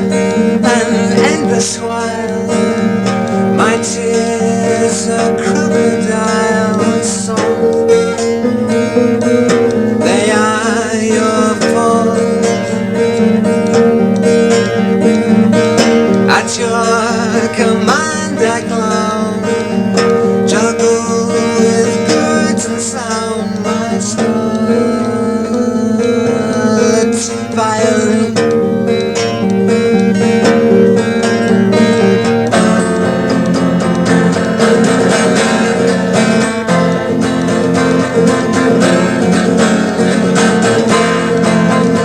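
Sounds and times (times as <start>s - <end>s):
acoustic guitar chords: 0.0s - 42.0s.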